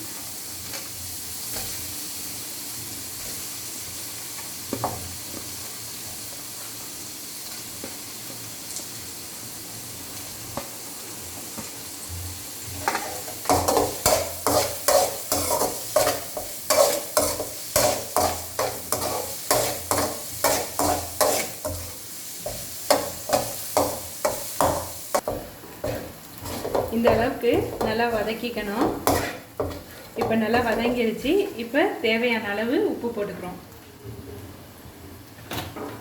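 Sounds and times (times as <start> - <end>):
food sizzling in oil: 0.0 - 33.0
spatula scraping a pan: 12.8 - 31.0.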